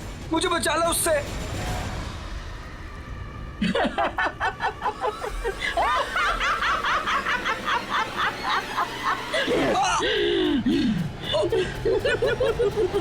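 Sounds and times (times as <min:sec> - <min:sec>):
high-pitched laughter: 0:03.6 - 0:10.0, 0:11.3 - 0:13.0.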